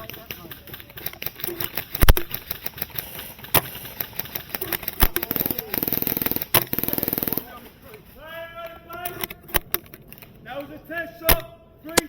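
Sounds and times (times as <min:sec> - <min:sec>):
airsoft rifle automatic fire: 0:00.0 - 0:08.2.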